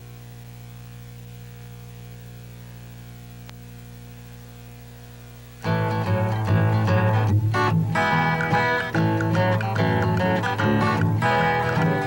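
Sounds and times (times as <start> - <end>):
electrical mains hum: 0.0 - 12.0
faint click: 3.4 - 3.6
plucked guitar theme tune: 5.6 - 12.0.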